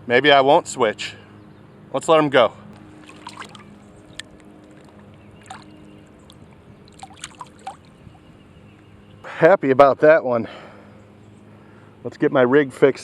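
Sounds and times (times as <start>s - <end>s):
faint water splashing: 2.9s - 7.9s.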